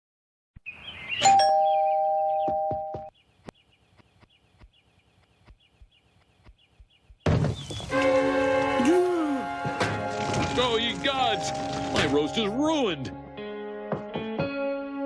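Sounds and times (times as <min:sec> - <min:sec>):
two-note doorbell chime: 0:01.2 - 0:03.0.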